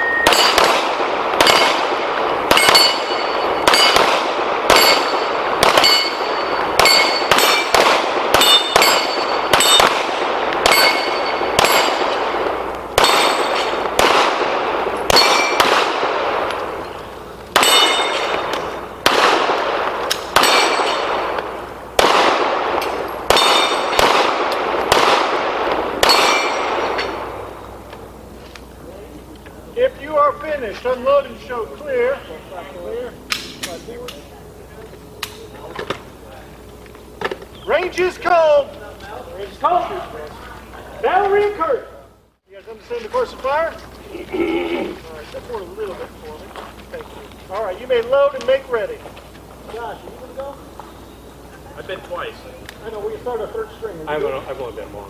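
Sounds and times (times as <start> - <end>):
steel plate ringing: 0.0 - 0.7, 2.5 - 4.1, 4.7 - 7.8, 8.4 - 10.0, 10.6 - 12.2, 13.0 - 13.8, 15.1 - 15.6, 17.6 - 18.4, 20.4 - 21.1, 22.8 - 24.0, 26.0 - 27.2
pistol shots: 0.0 - 27.8.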